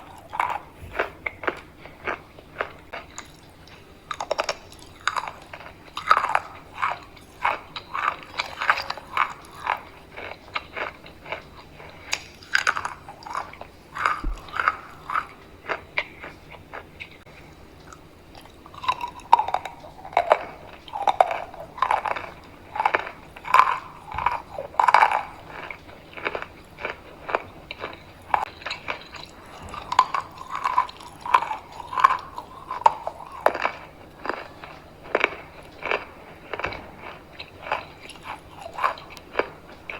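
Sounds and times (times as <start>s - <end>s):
crunchy chewing of chalk: 0.0s - 39.9s.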